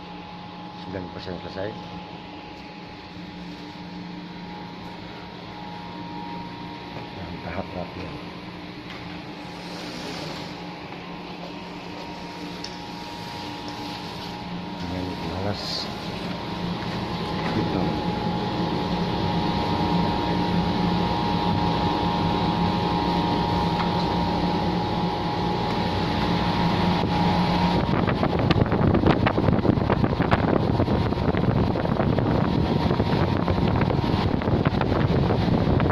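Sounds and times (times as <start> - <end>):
heat pump humming: 0.0 - 35.9
wind noise on microphone: 26.9 - 35.9.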